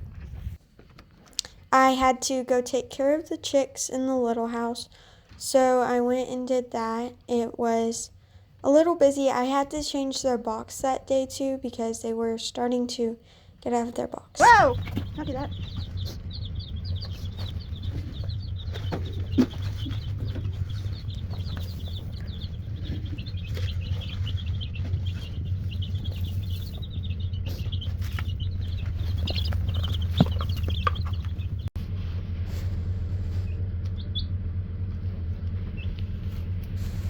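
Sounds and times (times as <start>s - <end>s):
chicks peeping: 14.4s - 31.7s, 33.4s - 34.3s, 35.6s - 36.1s
steady low hum: 14.4s - 37.0s.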